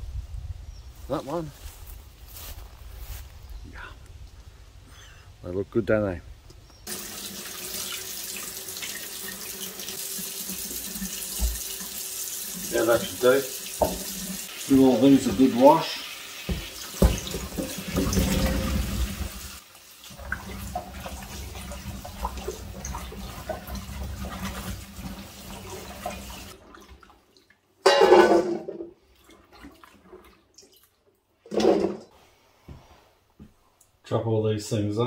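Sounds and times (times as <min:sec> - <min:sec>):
tap water running into sink: 0:06.9 - 0:27.1.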